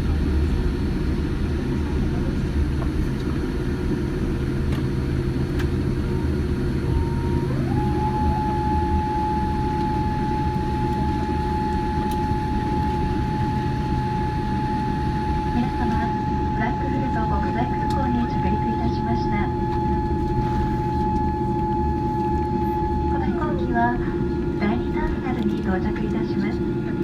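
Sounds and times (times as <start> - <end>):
aircraft cabin low rumble: 0.0 - 27.0
thin whine rising in pitch: 6.8 - 24.6.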